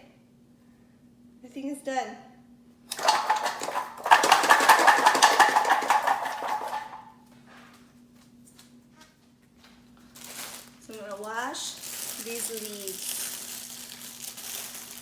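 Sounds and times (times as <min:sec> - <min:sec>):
garlic rattling in plastic container: 0:02.9 - 0:07.0, 0:10.2 - 0:15.0.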